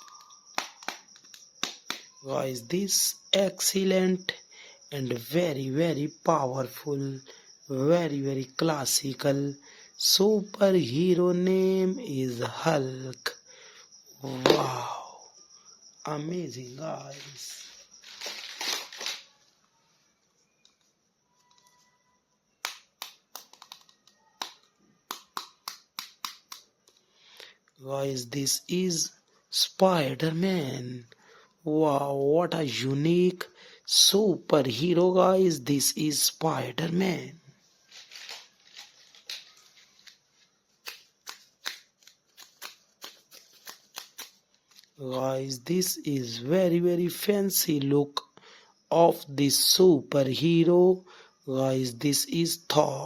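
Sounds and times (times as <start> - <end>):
plastic figure clicking and crinkling: 17.1 - 19.7, 22.6 - 27.0, 37.9 - 45.0.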